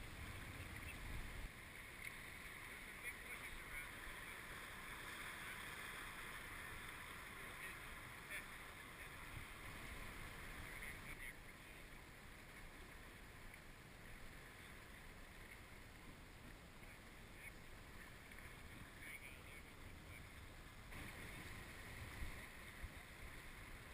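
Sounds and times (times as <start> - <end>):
water splashing against kayak: 0.0 - 23.9.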